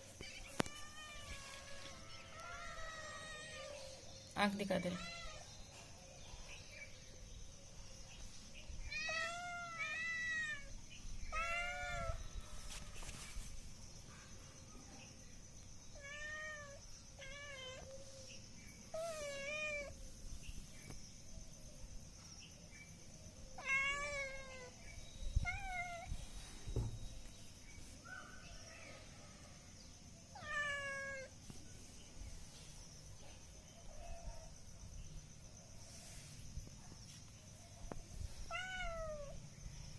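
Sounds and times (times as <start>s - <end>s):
cat meowing: 8.9s - 10.7s, 11.3s - 12.2s, 23.6s - 24.7s, 30.4s - 31.3s, 38.5s - 39.4s.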